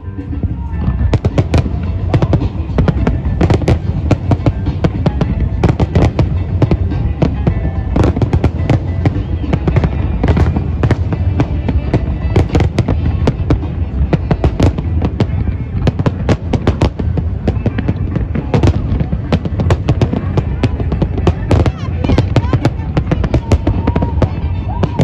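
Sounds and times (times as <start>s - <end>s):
fireworks cracking and booming: 0.0s - 25.0s
music playing: 0.0s - 25.0s.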